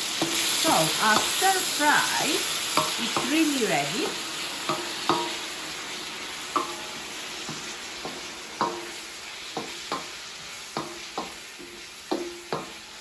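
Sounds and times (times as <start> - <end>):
stir fry sizzling in a wok: 0.0 - 13.0
utensil knocking metal pan: 12.1 - 12.8.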